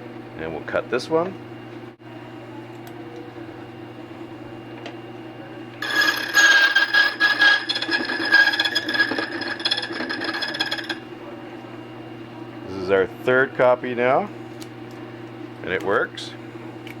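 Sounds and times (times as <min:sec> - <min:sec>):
cutting wheel rasping metal: 0:05.8 - 0:11.0.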